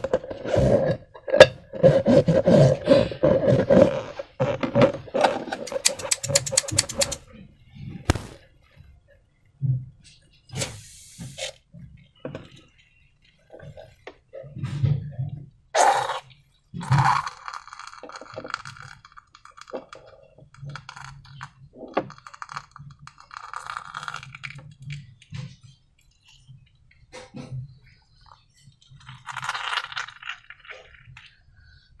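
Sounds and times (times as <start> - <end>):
clicks and clinks: 5.7 - 7.2
sharp crackling strikes: 8.1 - 8.4.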